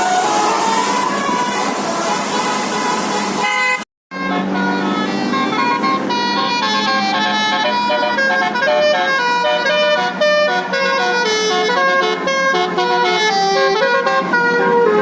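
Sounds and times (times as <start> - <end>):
musical air horn melody: 0.0 - 15.0.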